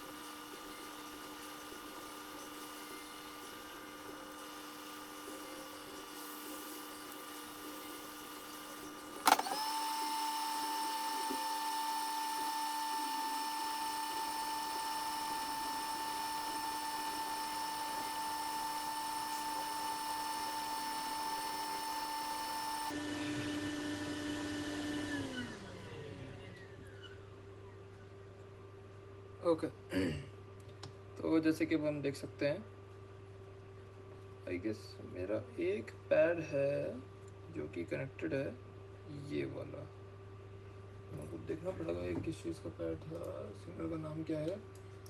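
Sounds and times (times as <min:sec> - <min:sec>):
blower motor whining: 0:00.0 - 0:26.9.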